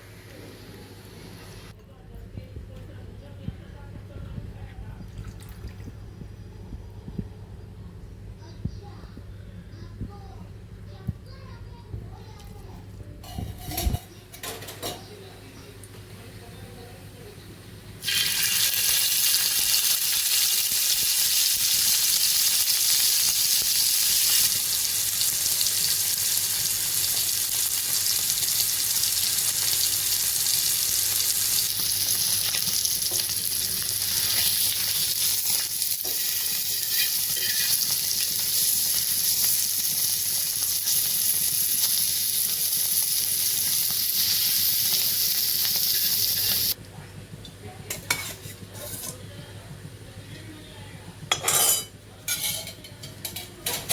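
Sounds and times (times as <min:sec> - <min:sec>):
food sizzling in hot oil: 0:18.0 - 0:46.8.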